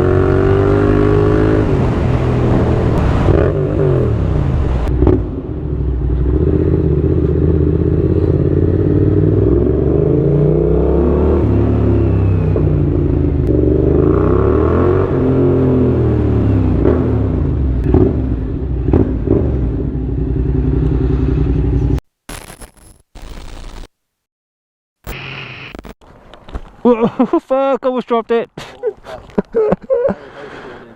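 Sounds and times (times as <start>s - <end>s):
motorcycle engine revving: 0.0s - 22.0s.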